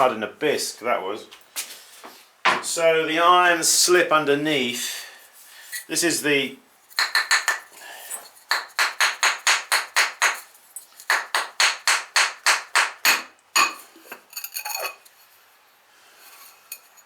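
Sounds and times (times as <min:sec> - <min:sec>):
sharp knocks on pottery: 0:07.0 - 0:07.7, 0:08.5 - 0:10.4, 0:11.1 - 0:13.8.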